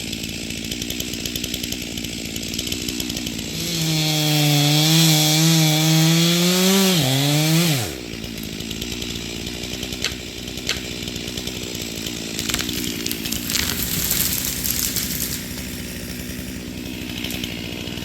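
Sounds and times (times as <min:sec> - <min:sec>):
chainsaw engine revving and idling: 0:00.0 - 0:18.0
sharp snaps and crackles: 0:10.0 - 0:11.2, 0:12.0 - 0:16.5.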